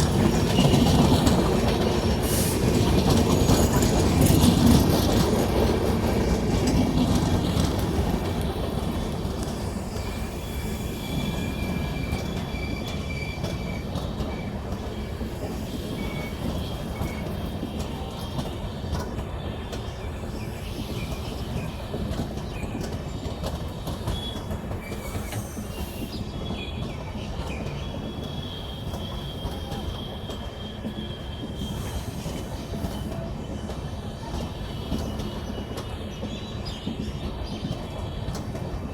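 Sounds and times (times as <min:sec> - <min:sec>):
train wheels rumbling on rails: 0:00.0 - 0:38.9
high-pitched wheel squeals: 0:10.0 - 0:14.6.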